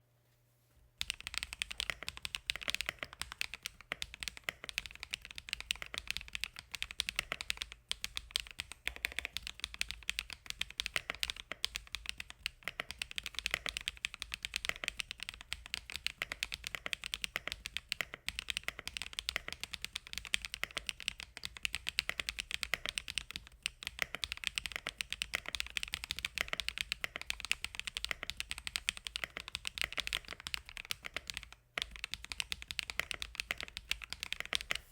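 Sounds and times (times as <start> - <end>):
mechanical keyboard typing: 1.0 - 34.9.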